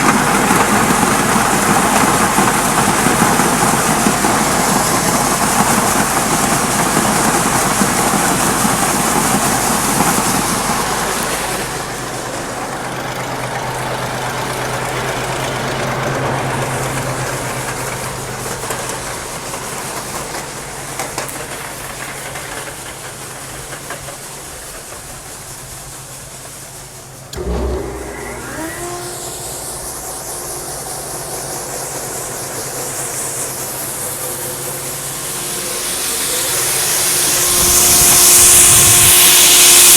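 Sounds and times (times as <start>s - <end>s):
engine running: 0.0s - 23.6s, 27.3s - 39.9s
loud rushing hiss: 24.3s - 39.9s
short gliding whine: 27.3s - 39.9s
sudden thump: 27.4s - 29.6s.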